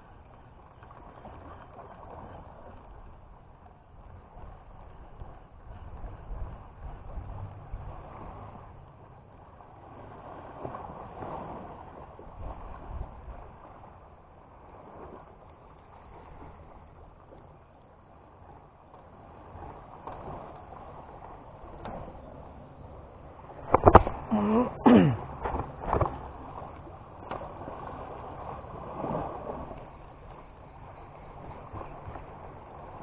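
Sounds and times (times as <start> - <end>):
waves surging against a wall: 0.0 - 33.0
wind on microphone: 4.2 - 8.6, 10.6 - 13.6.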